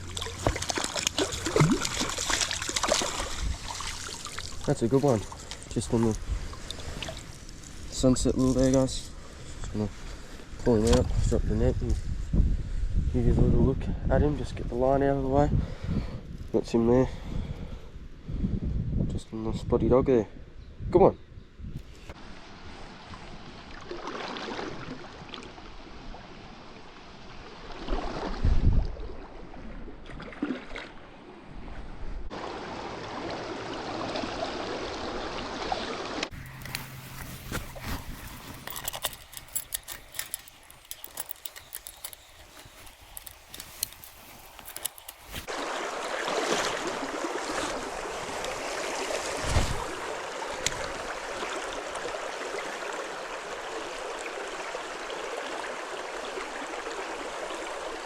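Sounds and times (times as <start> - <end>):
stream water running: 0.0 - 11.4, 22.1 - 31.7, 32.3 - 58.0.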